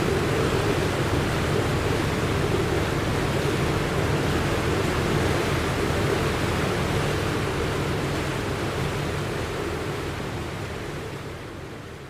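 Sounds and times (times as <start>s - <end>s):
sea rushing: 0.0s - 11.4s.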